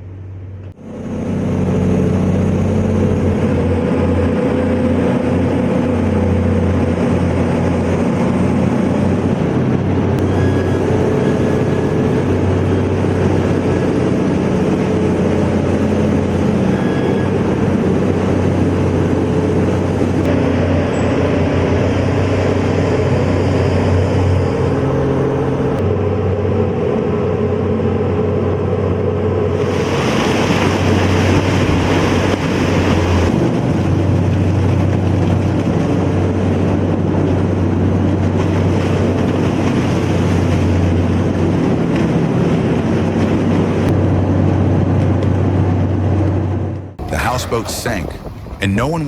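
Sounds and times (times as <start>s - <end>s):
excavator diesel engine running: 0.0s - 29.4s, 47.0s - 49.0s.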